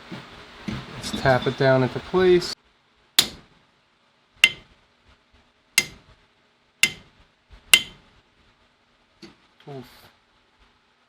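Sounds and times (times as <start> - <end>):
hammer tapping metal tube: 3.2 - 3.4, 4.4 - 4.7, 5.8 - 6.1, 6.8 - 7.1, 7.7 - 8.1.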